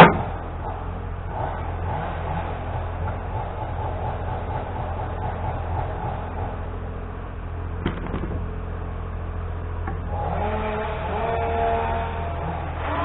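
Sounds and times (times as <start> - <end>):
steady low hum: 0.0 - 13.0
sharp knocks: 7.8 - 8.7
motor spinning up: 10.0 - 13.0.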